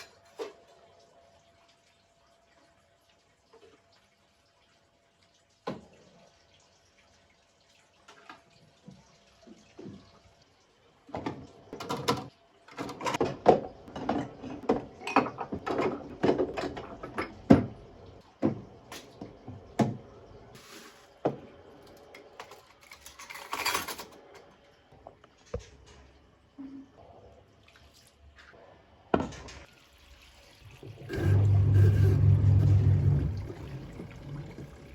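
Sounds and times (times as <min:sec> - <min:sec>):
objects clattering in sink: 0:00.0 - 0:00.8, 0:11.1 - 0:17.8, 0:18.4 - 0:20.0, 0:20.6 - 0:24.5, 0:29.1 - 0:29.7, 0:30.8 - 0:34.6
tap water running: 0:29.1 - 0:34.9.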